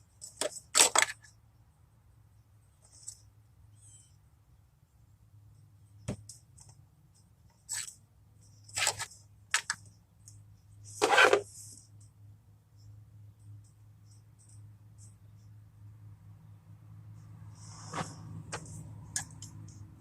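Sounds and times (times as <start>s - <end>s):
scraping and rustling: 10.8s - 11.8s.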